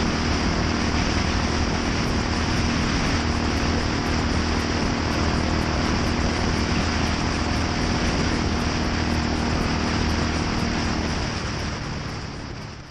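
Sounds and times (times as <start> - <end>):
exhaust hiss: 0.0 - 12.9
motorcycle engine running: 0.0 - 12.9.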